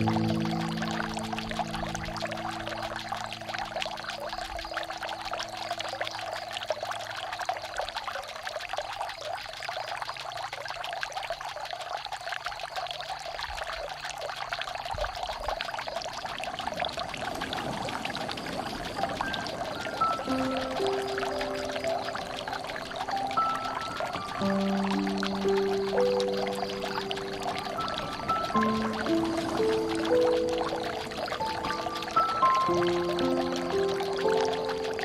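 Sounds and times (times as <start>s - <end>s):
low drone tones: 0.0s - 5.6s
water trickling and splashing: 0.0s - 35.0s.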